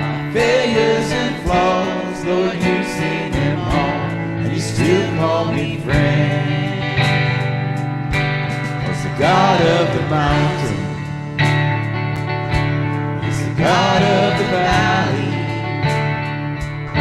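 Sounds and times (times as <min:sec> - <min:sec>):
person singing: 0:00.0 - 0:07.7, 0:08.8 - 0:11.3, 0:13.2 - 0:16.2
bass: 0:00.0 - 0:17.0
guitar: 0:00.0 - 0:17.0.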